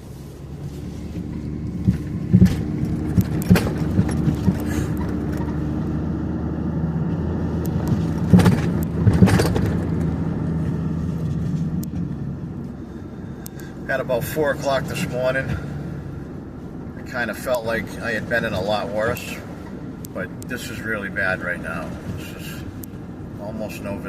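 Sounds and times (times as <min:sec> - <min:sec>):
vehicle engine running: 0:00.0 - 0:24.0
sharp knocks and rattles: 0:01.7 - 0:05.7, 0:07.9 - 0:10.2.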